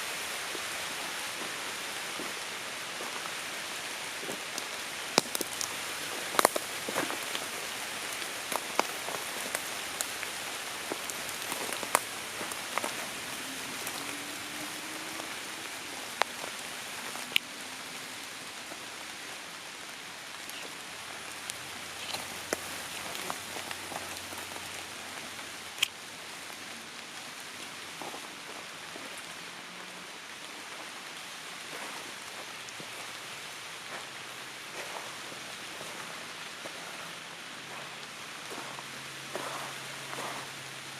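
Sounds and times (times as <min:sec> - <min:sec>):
light rain pattering on leaves: 0:00.0 - 0:40.9.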